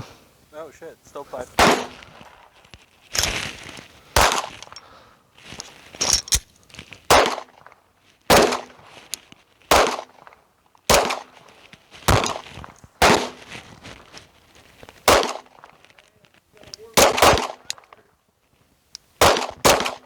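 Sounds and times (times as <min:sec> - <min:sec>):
gunshots with short echo: 0:01.6 - 0:02.2, 0:04.2 - 0:04.6, 0:08.3 - 0:08.8, 0:13.0 - 0:13.4, 0:15.1 - 0:15.5, 0:16.9 - 0:17.8, 0:19.2 - 0:20.0.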